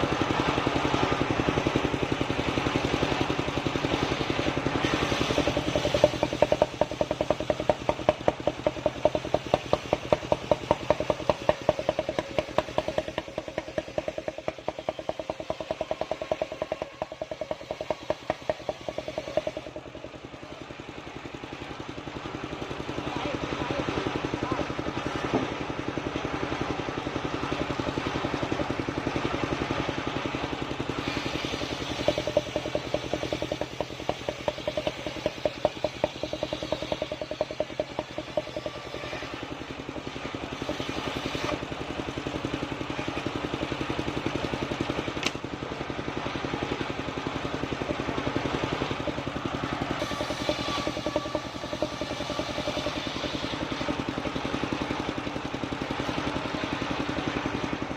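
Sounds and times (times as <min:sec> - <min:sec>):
sawmill engine running: 0:00.0 - 0:57.9
saw blade cutting wood: 0:04.8 - 0:19.8, 0:31.0 - 0:41.6, 0:50.0 - 0:54.0.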